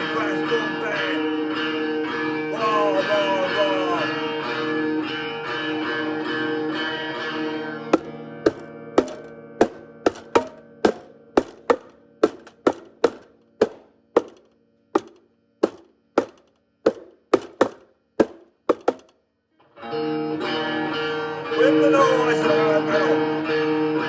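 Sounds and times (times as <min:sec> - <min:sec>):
plucked string notes: 0:06.0 - 0:14.4.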